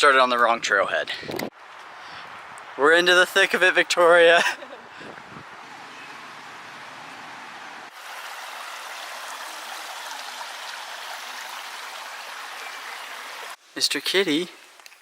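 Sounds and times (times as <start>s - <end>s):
creek water rushing: 5.6s - 13.6s
small waterfall: 7.6s - 13.6s.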